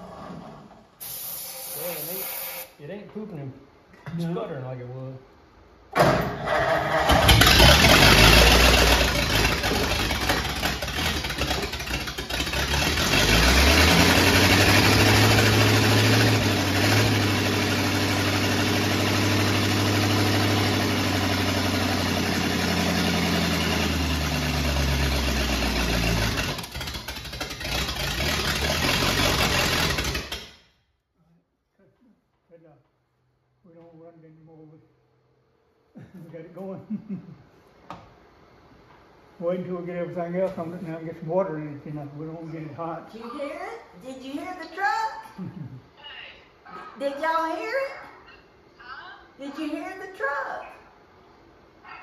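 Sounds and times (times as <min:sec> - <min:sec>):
car engine running: 0:07.2 - 0:30.4.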